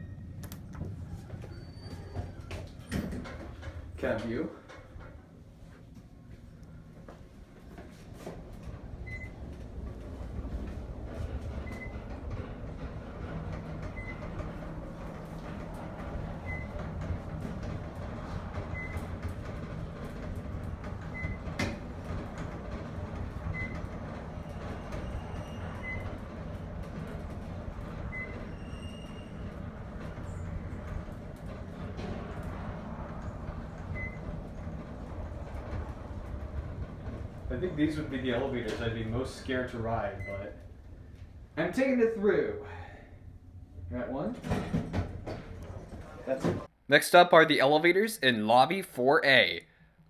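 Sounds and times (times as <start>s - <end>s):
elevator low running rumble: 0.0s - 46.8s.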